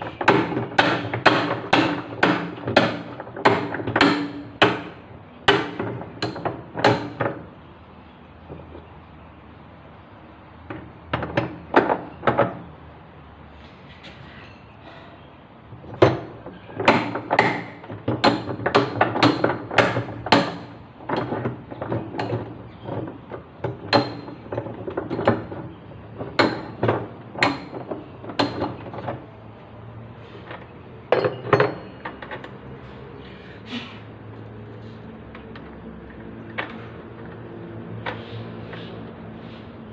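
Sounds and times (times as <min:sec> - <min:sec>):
sharp metallic knocks and clinks: 0:30.5 - 0:32.7.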